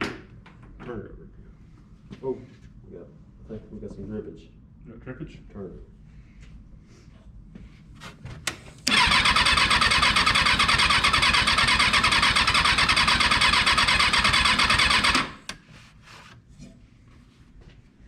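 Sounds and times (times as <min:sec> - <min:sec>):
engine starter cranking: 0:08.9 - 0:15.5.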